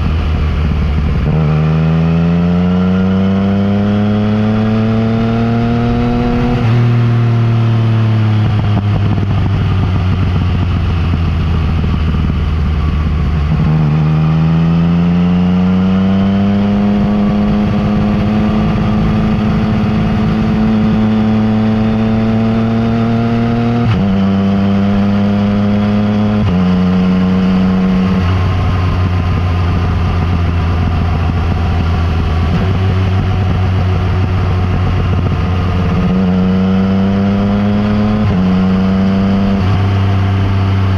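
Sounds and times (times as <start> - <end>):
motorcycle engine while riding: 0.0 - 40.9.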